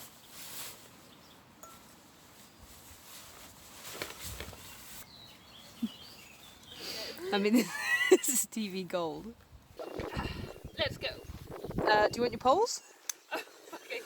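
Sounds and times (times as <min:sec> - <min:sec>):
quiet woodland background: 0:00.0 - 0:14.0
birds chirping: 0:04.5 - 0:14.0.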